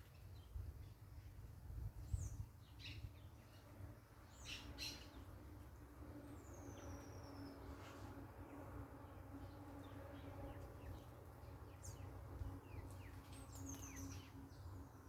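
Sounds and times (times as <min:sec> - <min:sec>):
birds chirping: 0:06.2 - 0:15.0.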